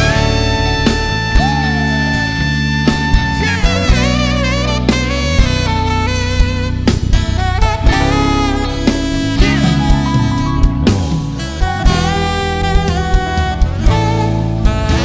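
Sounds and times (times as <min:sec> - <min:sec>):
drum hits: 0:00.0 - 0:15.0
lead melody with vibrato: 0:00.0 - 0:15.0
live band playing slow ballad: 0:00.0 - 0:15.0.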